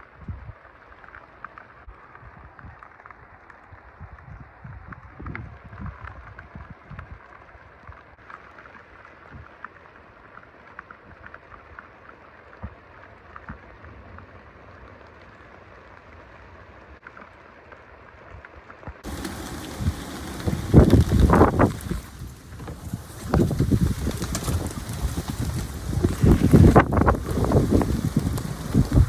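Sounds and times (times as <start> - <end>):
steady rain falling: 0.0 - 5.0, 5.6 - 29.0
low thumps: 19.0 - 29.0.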